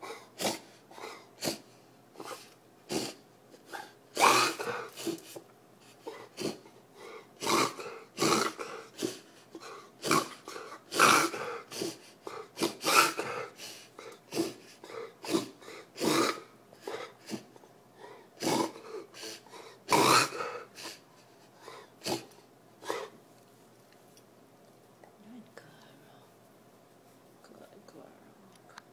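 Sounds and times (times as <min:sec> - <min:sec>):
dog coughing harshly: 0:00.0 - 0:05.3, 0:06.0 - 0:06.7, 0:07.4 - 0:09.2, 0:10.0 - 0:13.7, 0:14.3 - 0:17.5, 0:18.4 - 0:21.0, 0:21.6 - 0:23.1.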